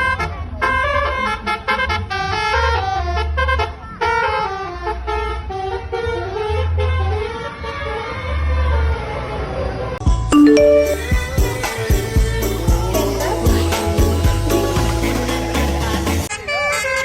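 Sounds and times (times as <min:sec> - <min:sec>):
multi-tone bus horn melody: 0:00.0 - 0:09.3.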